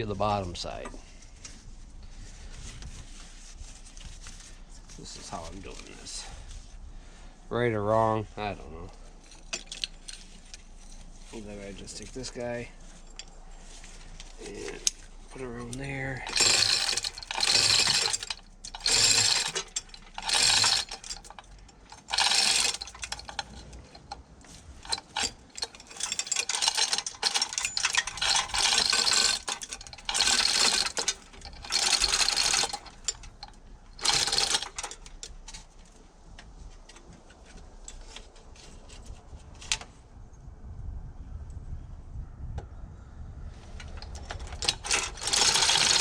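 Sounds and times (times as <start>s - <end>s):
hand ratchet clicking: 16.2s - 24.2s, 24.8s - 35.6s, 44.0s - 46.0s.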